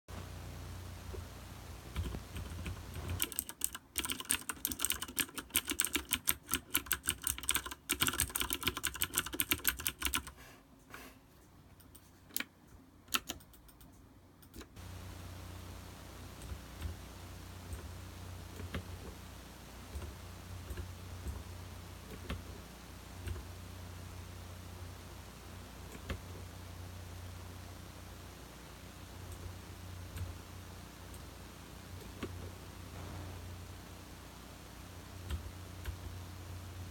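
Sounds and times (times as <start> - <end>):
mechanical keyboard typing: 1.9 - 10.4, 13.1 - 14.8, 18.5 - 19.2, 22.0 - 22.4
low hum: 14.8 - 36.9.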